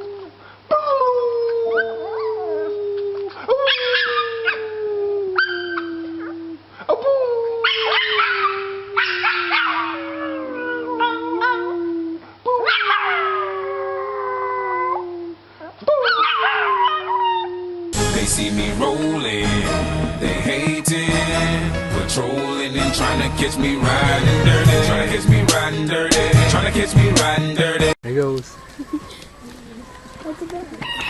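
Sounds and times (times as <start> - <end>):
dog howling: 0.0 - 6.6, 7.2 - 15.3, 15.9 - 18.0
music: 18.0 - 28.0.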